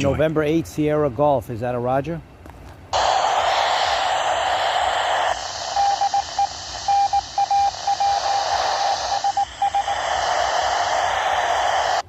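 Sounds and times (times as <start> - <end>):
radio hiss: 3.0 - 12.0
tone beeps: 5.4 - 11.0.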